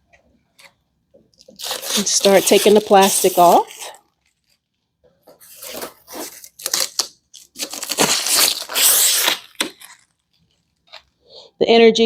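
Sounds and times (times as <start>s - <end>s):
plastic bag crinkling: 1.4s - 4.8s, 5.4s - 11.2s.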